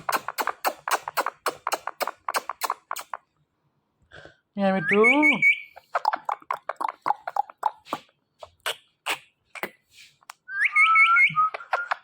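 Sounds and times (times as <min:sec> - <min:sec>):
parrot clicks and chirps: 0:00.0 - 0:03.2, 0:10.3 - 0:12.0
parrot whistle with trill: 0:10.5 - 0:12.0.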